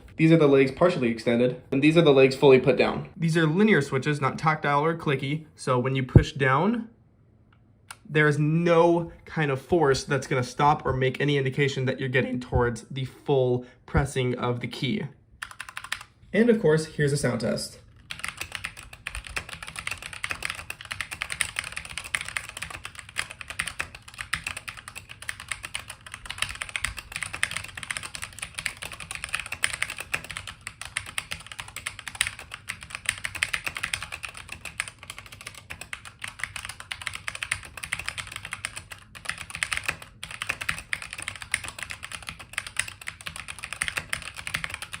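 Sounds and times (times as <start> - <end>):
mechanical keyboard typing: 15.4 - 16.1, 18.0 - 45.0.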